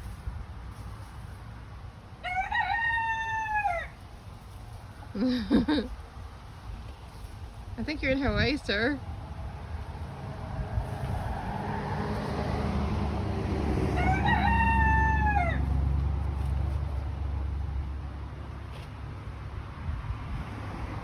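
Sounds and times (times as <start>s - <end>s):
rooster crowing: 2.2s - 4.0s, 13.5s - 15.9s.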